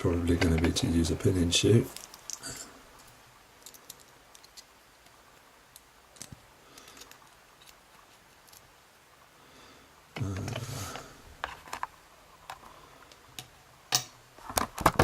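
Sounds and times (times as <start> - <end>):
metal lock parts clicking and tapping: 0.3 - 0.8, 3.6 - 5.2, 12.5 - 15.0.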